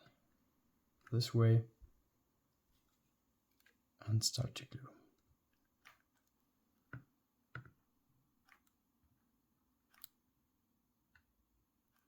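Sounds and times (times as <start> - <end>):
faint clicks and light taps: 5.1 - 7.8, 11.1 - 12.0.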